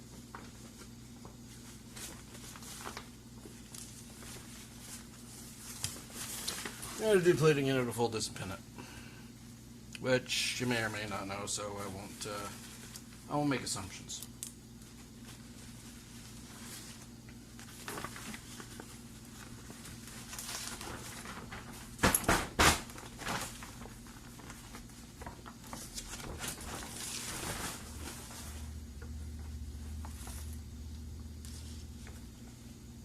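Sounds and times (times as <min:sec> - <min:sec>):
plastic tarp rustling: 0:00.0 - 0:07.6, 0:10.4 - 0:13.8, 0:14.8 - 0:28.9.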